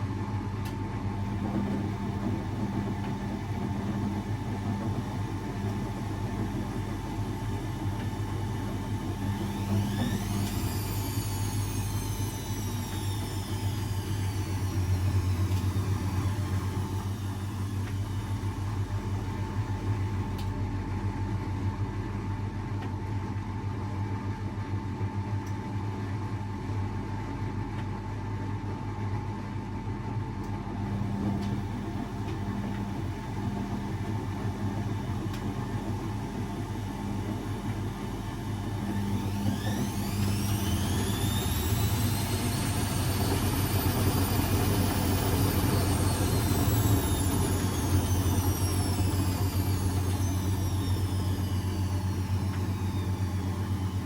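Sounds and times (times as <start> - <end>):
washing machine motor whine: 0.0 - 27.8, 30.0 - 54.0
low hum: 1.2 - 20.5, 30.8 - 54.0.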